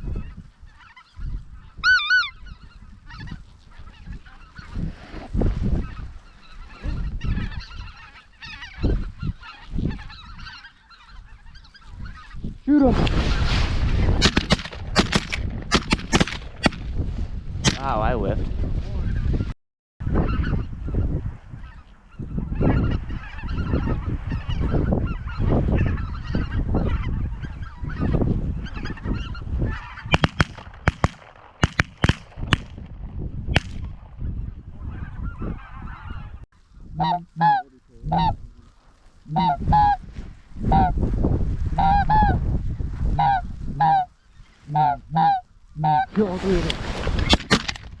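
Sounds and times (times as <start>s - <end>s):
snow geese calling: 0.0s - 4.9s, 5.7s - 12.6s, 21.5s - 32.5s, 34.8s - 40.1s, 40.7s - 41.0s, 41.8s - 42.4s, 43.1s - 46.7s
low wind rumble: 0.0s - 48.0s
sharp cracks: 13.0s - 16.9s, 17.6s - 17.9s, 30.1s - 32.9s, 33.5s - 34.0s, 47.2s - 48.0s
goose honks: 37.0s - 38.4s, 39.3s - 40.0s, 43.2s - 44.1s, 44.7s - 46.1s.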